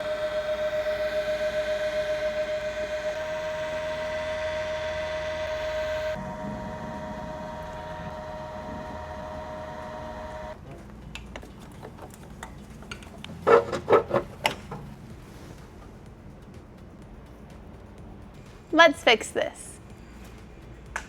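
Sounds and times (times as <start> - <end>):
small motor humming: 0.0 - 10.6.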